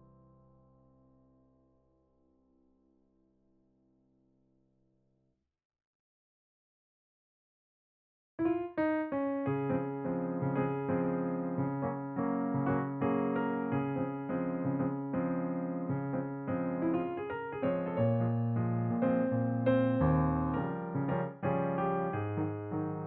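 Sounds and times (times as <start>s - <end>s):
piano music: 8.4s - 23.0s.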